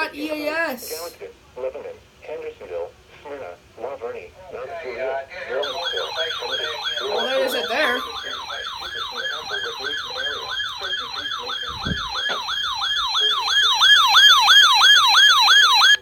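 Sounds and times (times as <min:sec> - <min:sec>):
electronic siren alert tone: 0:05.6 - 0:16.0.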